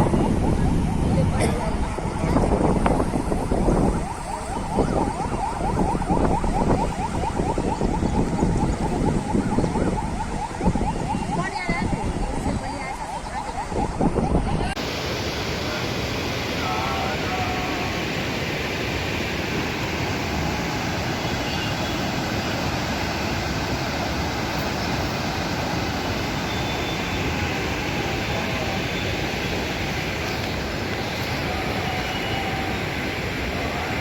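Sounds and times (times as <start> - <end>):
floodwater rushing past bridge: 14.7 - 34.0.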